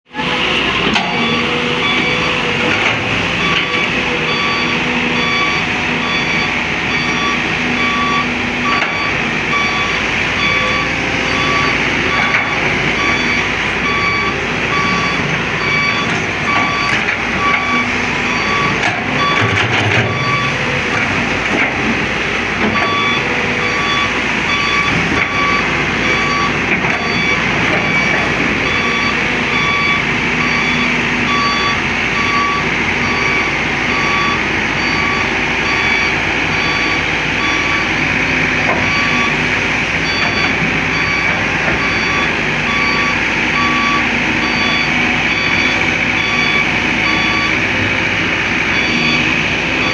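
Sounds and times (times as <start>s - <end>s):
diesel engine running: 0.1s - 49.9s
excavator warning alarm beeping: 0.1s - 49.9s.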